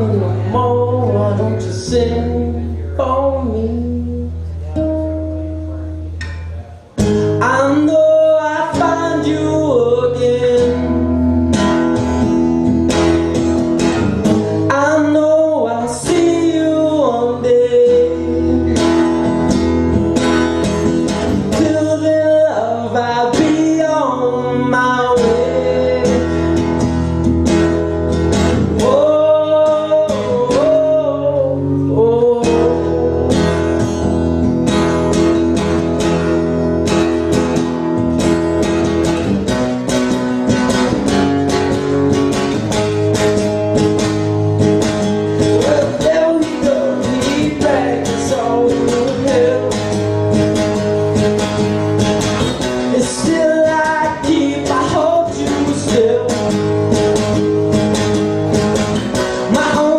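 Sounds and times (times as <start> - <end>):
acoustic guitar strumming: 0.0 - 59.9
wordless singing: 21.5 - 26.6, 45.5 - 49.9, 52.8 - 56.5.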